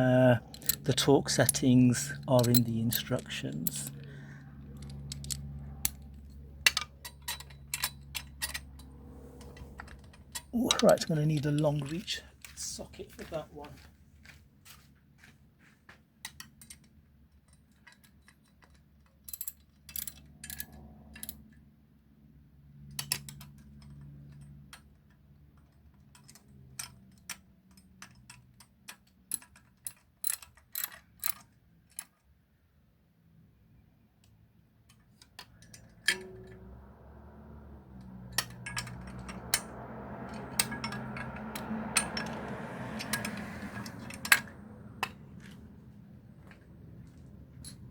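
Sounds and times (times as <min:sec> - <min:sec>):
metal rattling: 0:00.0 - 0:12.5, 0:35.2 - 0:37.2, 0:37.8 - 0:47.9
ratchet wrench clicking: 0:38.0 - 0:45.2.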